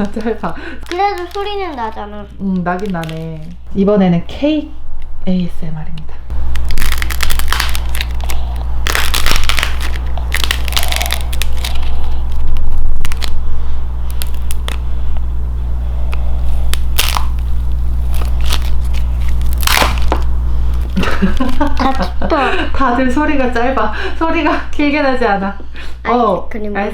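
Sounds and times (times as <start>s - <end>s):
dry clay crushed by hand: 6.3s - 15.5s, 16.1s - 22.2s.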